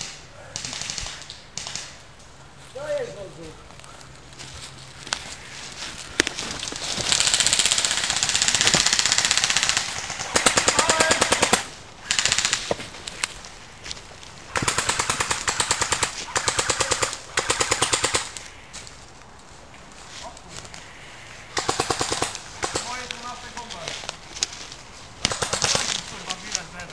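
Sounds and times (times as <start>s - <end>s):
airsoft guns firing bursts: 0.0s - 2.0s, 6.8s - 12.9s, 14.5s - 18.4s, 21.5s - 23.4s, 25.2s - 26.4s.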